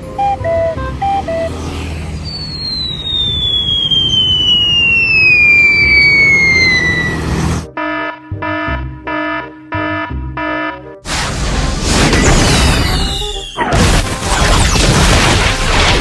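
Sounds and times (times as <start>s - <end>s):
electronic beeping: 0.1s - 7.3s
whistle falling in pitch: 2.1s - 7.2s.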